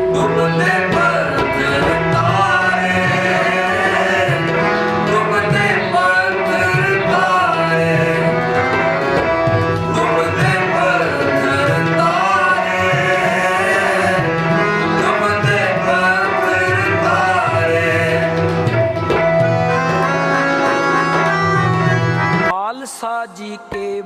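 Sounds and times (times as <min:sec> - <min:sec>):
voices singing a hymn: 0:00.0 - 0:09.2, 0:09.8 - 0:18.6
harmonium drone: 0:00.0 - 0:23.6
tabla: 0:00.0 - 0:24.0.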